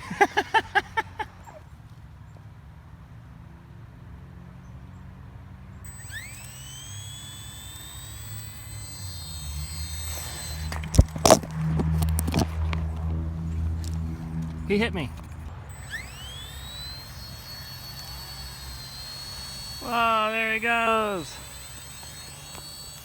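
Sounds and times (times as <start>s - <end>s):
electric motor whine: 5.9s - 23.0s
low hum: 5.9s - 23.0s.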